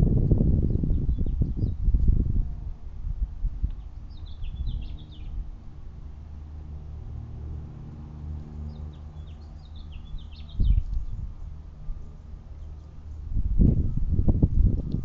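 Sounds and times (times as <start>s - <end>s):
low rumble: 0.0s - 15.0s
songbird twittering: 0.7s - 1.8s, 3.7s - 5.4s, 8.6s - 11.5s.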